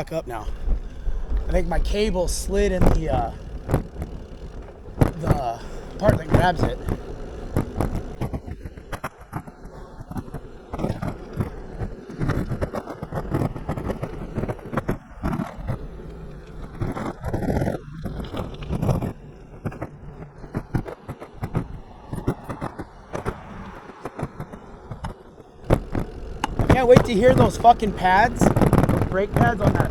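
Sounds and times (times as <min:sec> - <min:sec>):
rushing wind noise: 0:00.0 - 0:07.2, 0:24.7 - 0:29.9
bike knocks and rattles: 0:00.0 - 0:19.2, 0:24.2 - 0:29.9.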